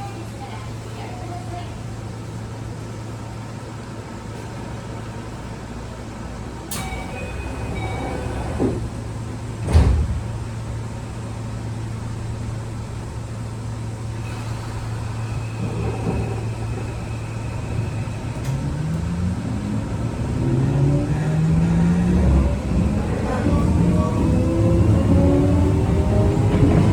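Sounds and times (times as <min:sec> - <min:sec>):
electric train motor humming: 0:06.7 - 0:26.9.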